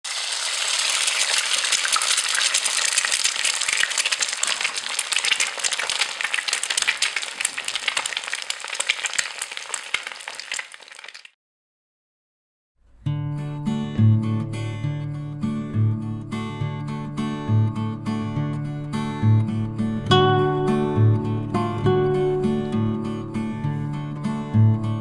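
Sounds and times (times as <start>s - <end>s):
sizzling crackle with tiny pops: 0.1s - 11.4s.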